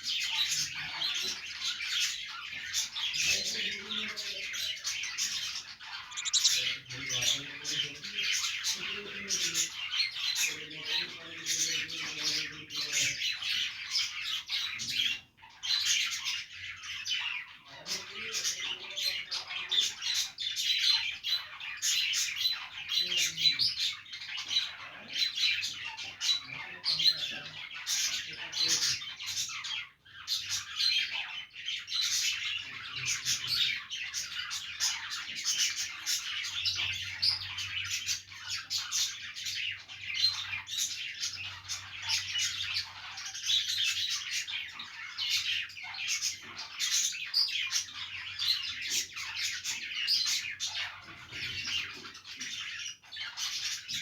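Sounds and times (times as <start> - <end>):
budgerigars chattering and chirping: 0.0 - 54.0
sharp bird squawks: 6.0 - 6.9.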